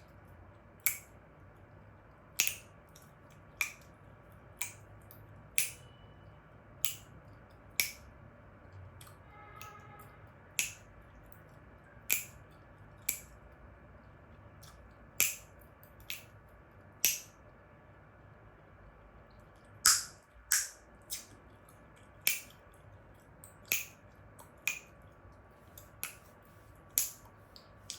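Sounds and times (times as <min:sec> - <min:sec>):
chewing gum snapping: 0:19.8 - 0:22.6, 0:23.4 - 0:24.9.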